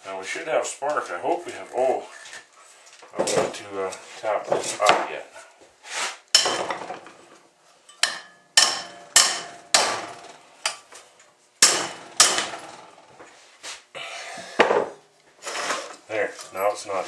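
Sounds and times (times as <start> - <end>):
hammer tapping on metal: 7.9 - 10.0.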